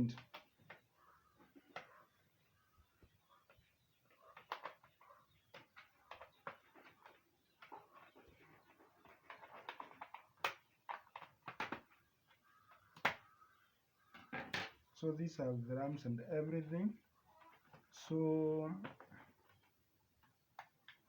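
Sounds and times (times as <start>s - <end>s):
plastic laptop parts clicking: 4.2s - 8.1s, 8.7s - 13.5s, 20.2s - 21.0s.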